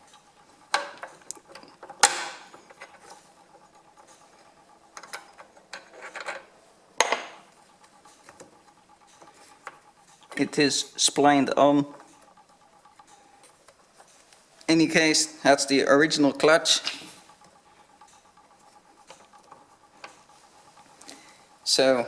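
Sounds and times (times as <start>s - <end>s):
metal clanks and knocks: 0.7s - 3.2s.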